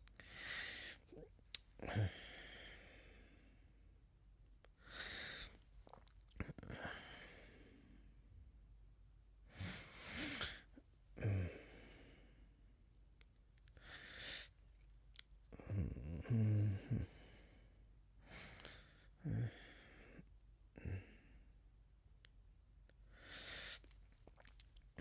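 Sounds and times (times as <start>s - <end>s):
man sighing and exhaling: 9.5s - 12.2s.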